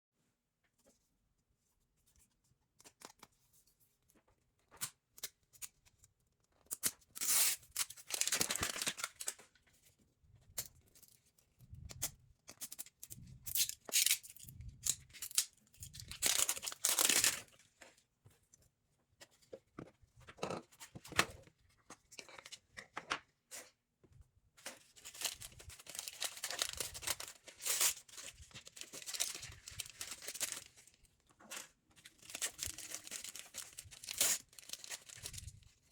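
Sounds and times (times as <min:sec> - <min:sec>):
packaging tearing and crinkling: 0:06.8 - 0:09.4, 0:13.5 - 0:17.5, 0:25.0 - 0:30.8, 0:32.2 - 0:35.7.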